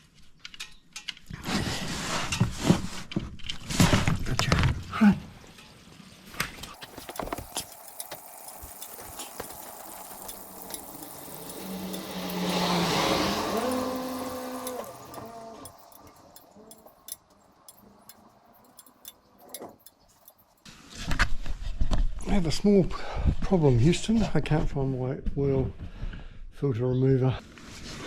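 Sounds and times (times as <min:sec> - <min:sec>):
light clicks and ticks: 0:06.8 - 0:20.7
vehicle passing: 0:07.8 - 0:19.0.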